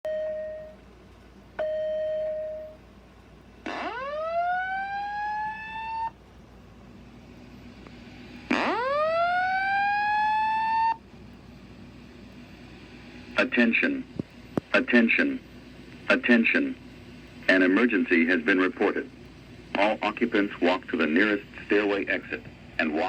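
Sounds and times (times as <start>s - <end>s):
fire alarm beep: 0.1s - 0.8s, 1.6s - 2.8s, 3.8s - 6.2s
fire alarm rising whoop: 3.7s - 6.2s, 8.2s - 11.0s.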